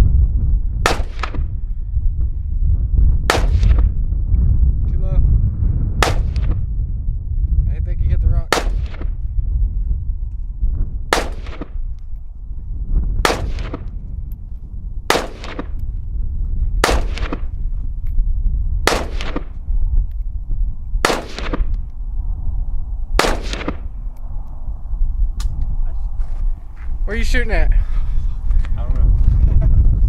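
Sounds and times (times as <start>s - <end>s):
wind buffeting microphone: 0.0s - 30.0s
rifle shots echoing: 0.8s - 1.5s, 3.3s - 4.0s, 6.0s - 6.6s, 8.5s - 9.1s, 11.1s - 11.8s, 13.2s - 13.9s, 15.1s - 15.8s, 16.8s - 17.6s, 18.8s - 19.6s, 21.0s - 21.8s, 23.2s - 24.0s.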